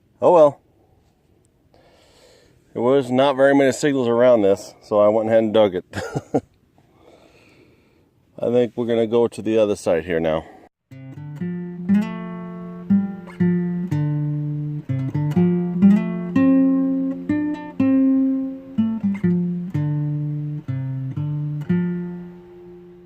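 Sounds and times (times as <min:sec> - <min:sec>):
acoustic guitar music: 0:10.9 - 0:23.0.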